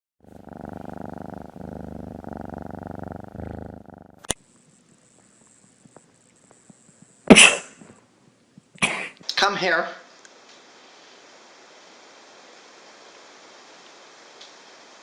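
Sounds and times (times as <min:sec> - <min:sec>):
cat purring: 0:00.2 - 0:04.4.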